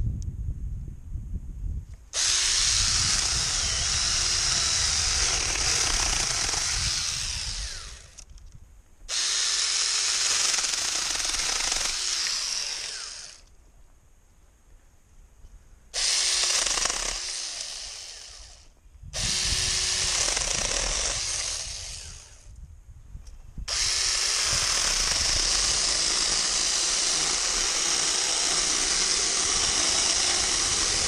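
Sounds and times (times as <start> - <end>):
chainsaw cutting wood: 2.1 - 8.4, 9.1 - 13.5, 16.0 - 22.5, 23.7 - 31.0.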